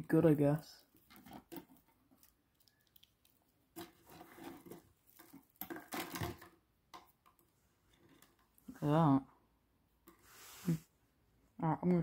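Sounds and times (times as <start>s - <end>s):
rustling and clattering of cable bits: 0.9s - 6.6s.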